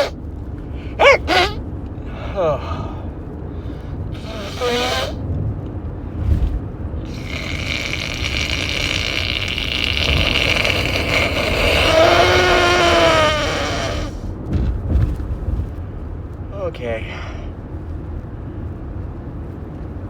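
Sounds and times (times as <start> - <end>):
person blowing nose: 1.0 - 1.6, 4.2 - 5.2, 7.1 - 14.2
short voiced sound: 1.0 - 1.6.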